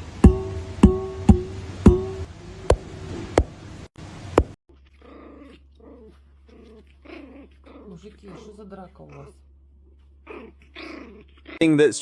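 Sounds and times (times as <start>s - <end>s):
strummed guitar chords: 0.0s - 2.3s
steady low hum: 0.0s - 4.6s
dog growling: 4.7s - 9.5s, 10.2s - 11.6s.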